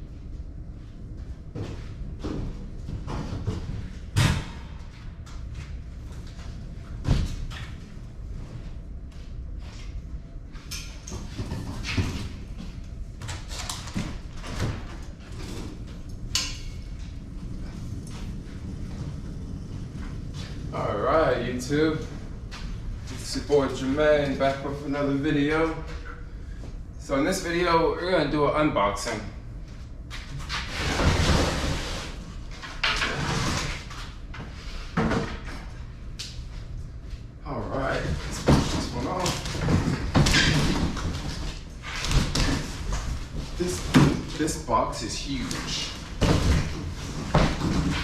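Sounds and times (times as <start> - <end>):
steady low rumble: 0.0 - 11.6, 12.2 - 31.0.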